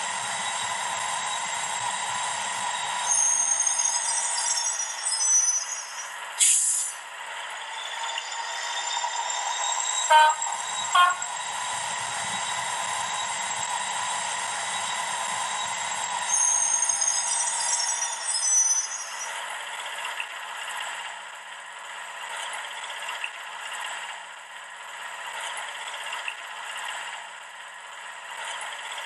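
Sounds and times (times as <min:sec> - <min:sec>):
model locomotive diesel engine sound: 0:00.0 - 0:29.0
short hiss of air: 0:06.4 - 0:07.0
short horn blasts: 0:10.1 - 0:11.3.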